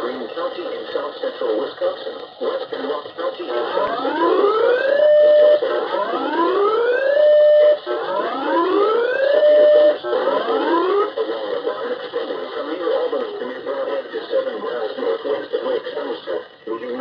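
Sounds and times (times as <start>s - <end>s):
electronic alarm whoop tone: 3.8s - 11.1s.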